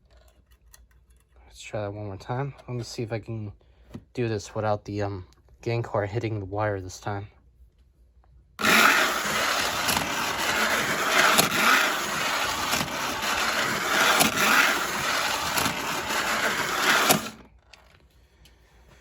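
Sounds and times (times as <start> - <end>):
wheels clattering on track: 8.6 - 17.4
small electric motor whirring: 8.6 - 17.5
clicks: 8.6 - 18.6.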